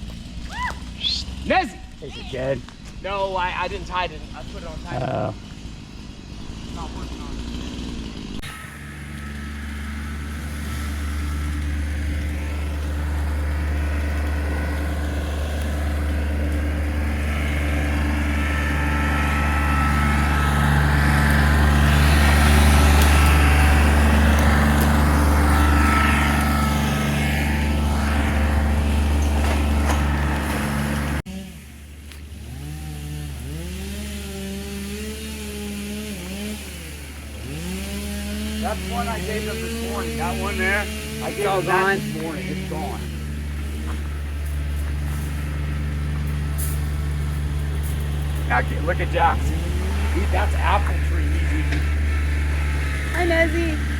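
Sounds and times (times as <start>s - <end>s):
engine running steadily: 0.0s - 53.9s
quieter engine revving: 0.0s - 53.9s.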